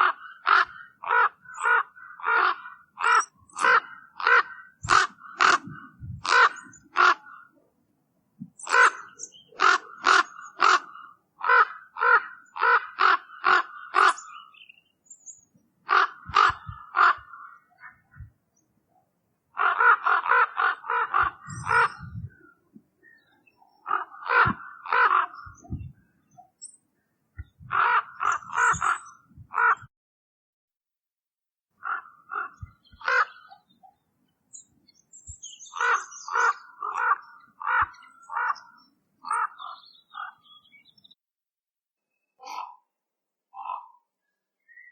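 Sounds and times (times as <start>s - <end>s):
raven calling: 0.0s - 7.6s, 8.6s - 14.6s, 15.8s - 18.3s, 19.5s - 26.5s, 27.4s - 29.9s, 31.8s - 33.7s, 35.5s - 40.6s, 43.6s - 44.0s.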